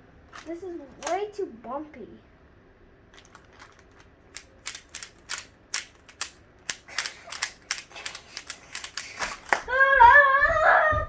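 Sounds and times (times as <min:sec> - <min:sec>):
puzzle cube clicking: 0:03.2 - 0:09.2.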